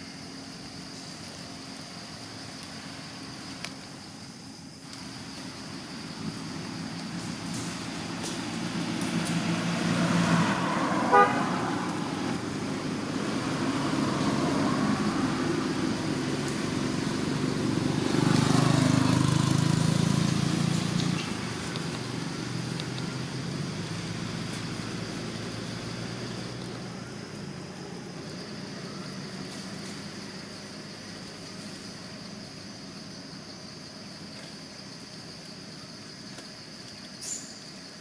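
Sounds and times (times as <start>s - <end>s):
vehicles passing: 0.0s - 38.0s
short horn toot: 11.0s - 11.5s.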